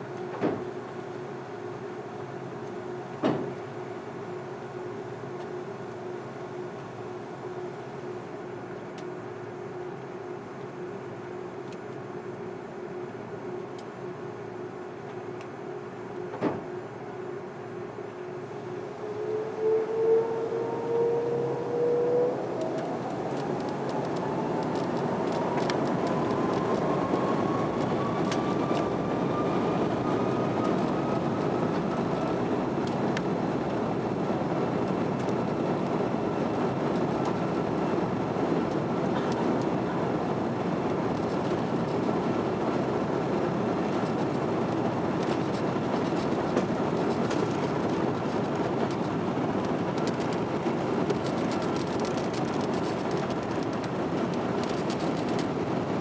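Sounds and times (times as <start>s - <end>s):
jet engine whine rising: 18.7s - 35.7s
airplane cabin rumble: 18.9s - 56.0s.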